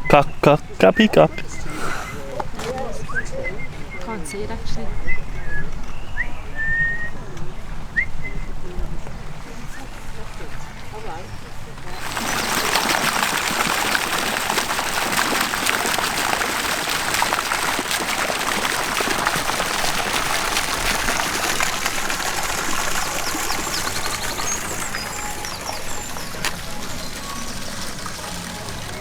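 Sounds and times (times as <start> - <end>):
rushing splashing water: 8.9 - 29.0.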